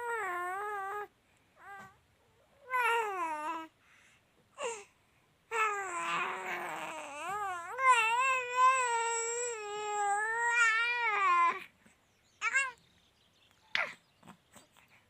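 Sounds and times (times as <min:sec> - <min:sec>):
baby crying: 0:05.5 - 0:11.6, 0:12.4 - 0:12.8.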